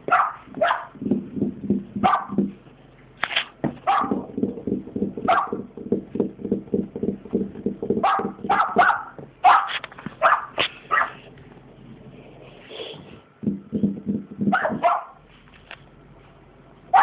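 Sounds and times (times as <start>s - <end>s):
dog barking and yipping: 0.0s - 1.0s, 2.0s - 2.4s, 3.8s - 4.3s, 5.2s - 5.6s, 8.0s - 11.3s, 14.5s - 15.2s
fast low pulses: 0.0s - 2.8s, 4.1s - 8.8s.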